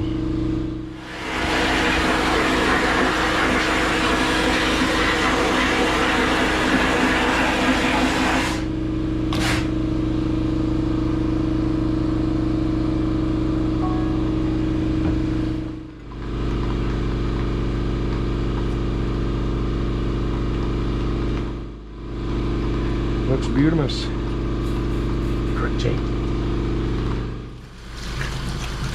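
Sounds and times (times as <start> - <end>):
pump humming: 0.7 - 9.8, 24.1 - 28.9.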